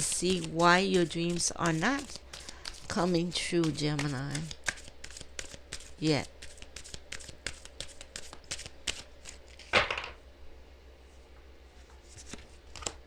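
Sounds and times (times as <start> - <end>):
cards shuffled by hand: 0.0 - 9.7, 12.0 - 13.0.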